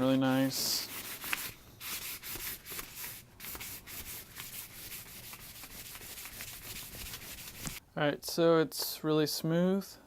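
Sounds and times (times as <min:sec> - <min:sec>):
sandpaper rubbing on wood: 0:00.4 - 0:07.8.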